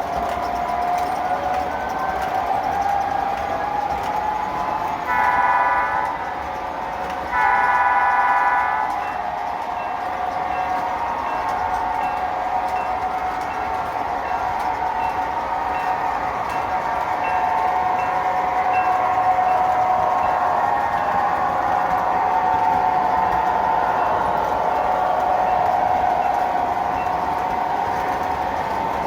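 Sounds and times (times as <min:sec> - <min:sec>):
model train horn blasts: 0:05.0 - 0:15.8, 0:16.4 - 0:28.8.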